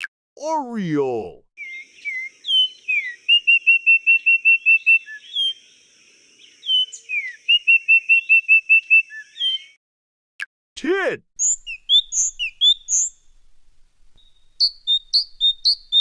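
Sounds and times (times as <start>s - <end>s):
bird singing whistled notes: 1.6s - 9.8s, 11.4s - 16.0s
steady high-pitched hiss: 11.4s - 16.0s.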